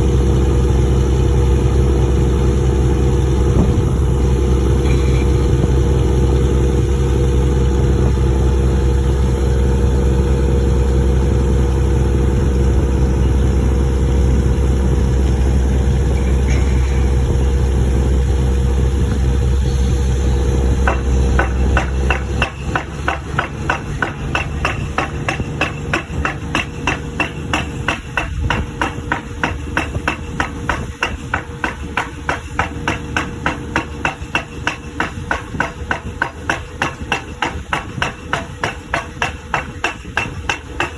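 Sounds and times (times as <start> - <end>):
heavy engine running: 0.0 - 40.9
pile hammer striking: 20.8 - 40.9.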